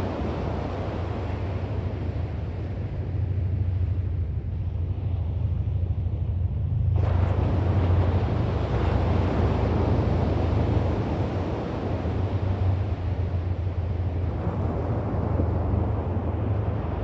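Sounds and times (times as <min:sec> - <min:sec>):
ocean surf: 0:00.0 - 0:03.5, 0:07.0 - 0:17.0.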